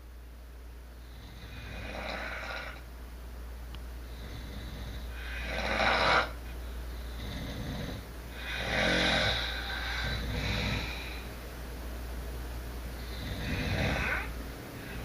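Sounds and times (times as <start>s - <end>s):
steady low hum: 0.0s - 15.0s
person snoring: 1.0s - 2.8s, 4.1s - 6.4s, 7.0s - 11.3s, 13.0s - 15.0s.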